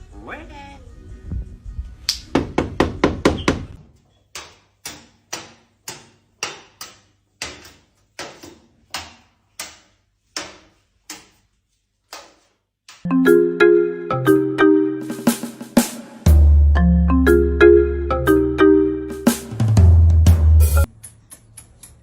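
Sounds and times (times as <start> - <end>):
sharp knocks on hard surface: 2.3 - 3.8.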